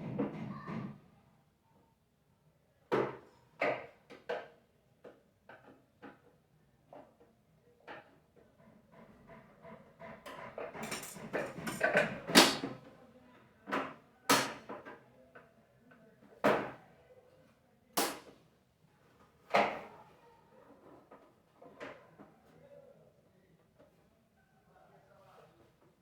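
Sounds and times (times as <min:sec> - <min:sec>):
hard parts clattering: 0:10.8 - 0:12.7.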